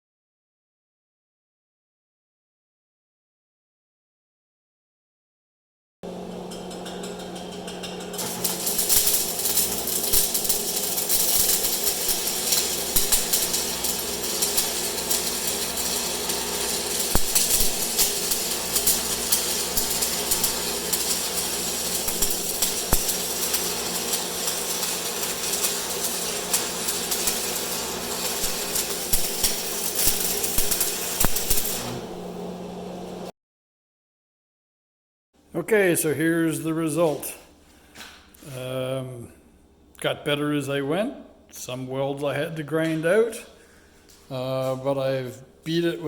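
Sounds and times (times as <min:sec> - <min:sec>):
welder hum: 0:06.0 - 0:33.3
welding arc crackling: 0:06.1 - 0:33.3.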